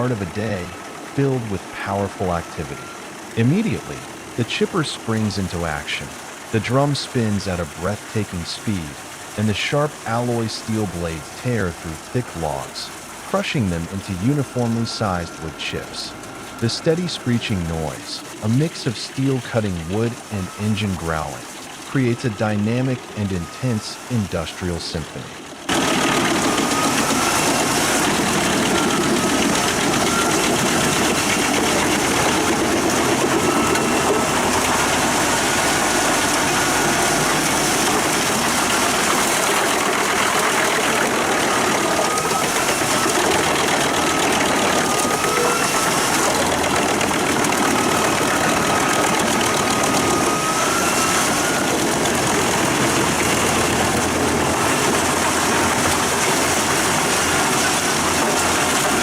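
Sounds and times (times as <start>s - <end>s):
tractor engine noise: 0.0s - 59.0s
screeching whine: 25.0s - 59.0s
wood chipper cutting logs: 25.7s - 59.0s.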